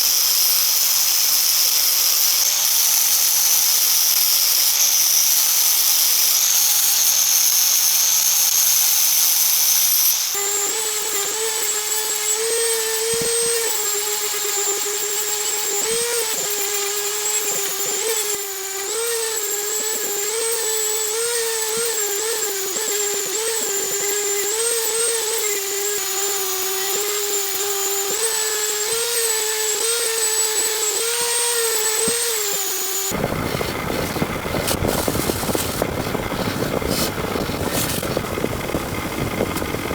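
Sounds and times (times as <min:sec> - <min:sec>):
high-pitched power tool whine: 0:00.0 - 0:39.9
motor under changing load: 0:00.0 - 0:39.9
rough even motor noise: 0:08.4 - 0:39.9.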